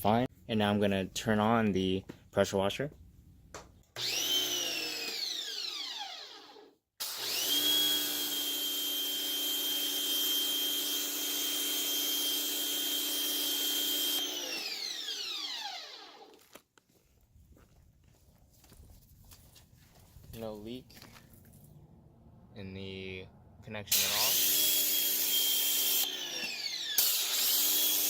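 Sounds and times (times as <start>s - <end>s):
pressure washer motor whining: 4.0s - 16.3s, 23.9s - 28.0s.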